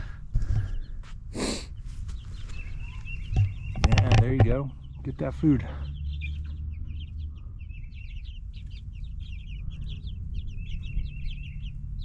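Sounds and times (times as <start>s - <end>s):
chicks peeping: 0.0s - 12.0s
steady low rumble: 5.8s - 12.0s.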